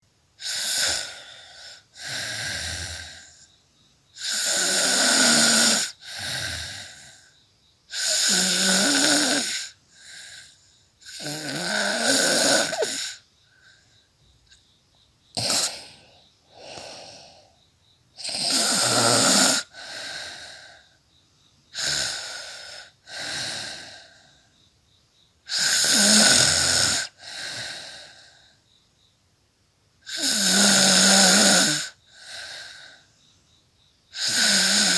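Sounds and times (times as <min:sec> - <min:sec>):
woman snoring: 0:00.4 - 0:03.5, 0:04.2 - 0:13.7, 0:15.3 - 0:17.6, 0:18.2 - 0:21.0, 0:21.7 - 0:24.5, 0:25.5 - 0:28.4, 0:30.1 - 0:33.1, 0:34.1 - 0:34.9.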